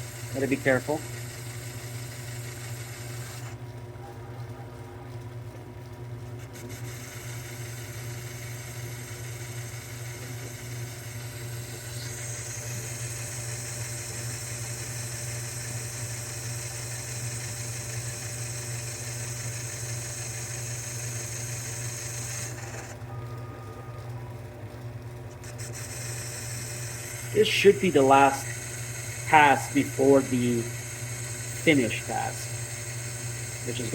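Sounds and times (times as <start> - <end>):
lathe motor hum: 0.0 - 33.9
hiss of metal cutting: 25.5 - 33.9.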